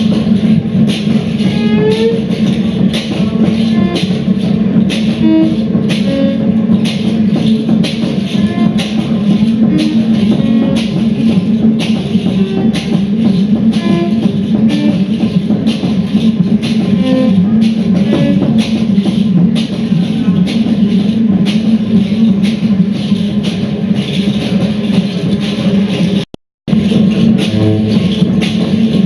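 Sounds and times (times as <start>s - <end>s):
sharp percussive hits: 0.0s - 29.0s
short pitched notes: 27.1s - 28.6s.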